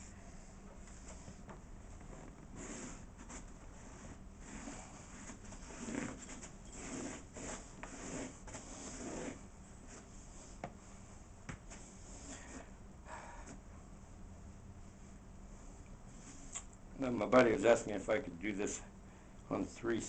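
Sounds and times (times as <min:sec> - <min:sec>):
rustling and rubbing: 0:00.0 - 0:12.8.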